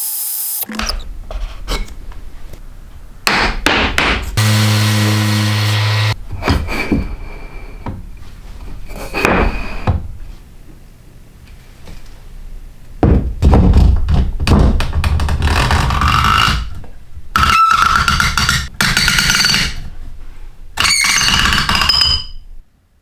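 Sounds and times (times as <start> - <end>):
circular saw cutting wood: 4.4 - 6.2.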